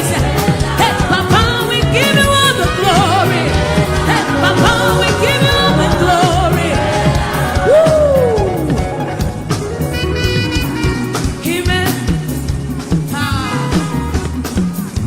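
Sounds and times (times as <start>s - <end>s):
people singing: 0.0s - 9.5s
gospel band playing: 0.0s - 15.0s.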